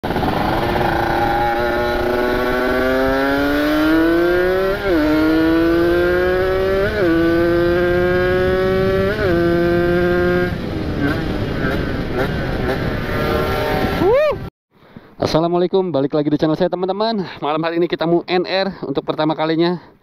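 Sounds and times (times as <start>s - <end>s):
motorcycle engine accelerating: 0.0s - 14.3s.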